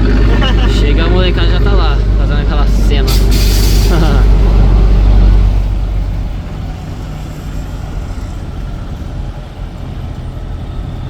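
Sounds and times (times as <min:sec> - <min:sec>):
diesel truck engine rumbling: 0:00.0 - 0:11.0.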